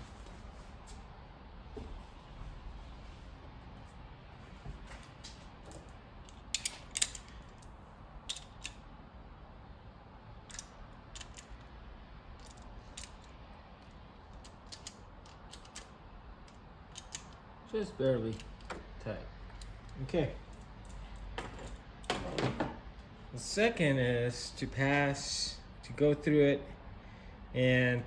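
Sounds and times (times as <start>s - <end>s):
metallic clicks of hand tools: 6.3s - 7.7s, 10.5s - 11.5s.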